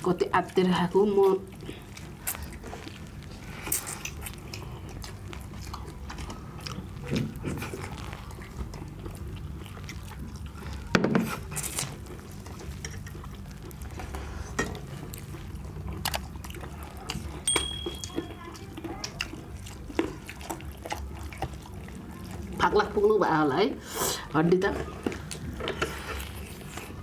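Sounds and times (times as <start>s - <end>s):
chewing and biting food: 0.4s - 23.1s, 24.7s - 27.0s
food crunch: 1.6s - 22.6s.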